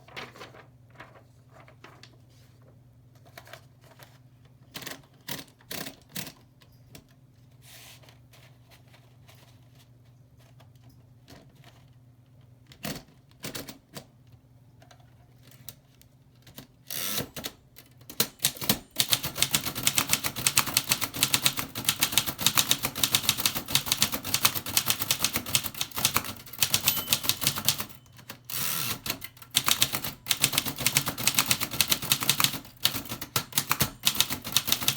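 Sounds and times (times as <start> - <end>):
typewriter typing: 17.0 - 34.9.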